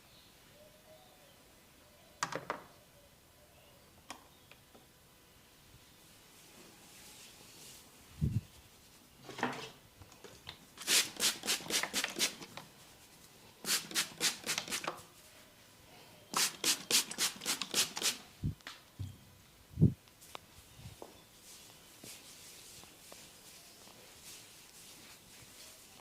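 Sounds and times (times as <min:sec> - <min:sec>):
hands rubbing hair: 0:10.8 - 0:15.2, 0:16.4 - 0:18.2, 0:20.9 - 0:26.0.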